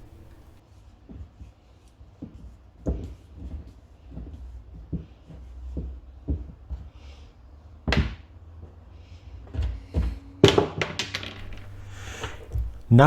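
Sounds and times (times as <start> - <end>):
handling knocks and clunks: 0.0 - 0.6, 11.4 - 13.0.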